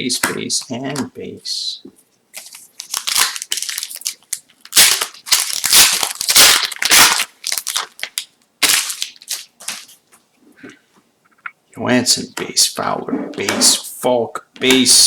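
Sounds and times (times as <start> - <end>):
foil wrapper tearing and crinkling: 2.4 - 10.0.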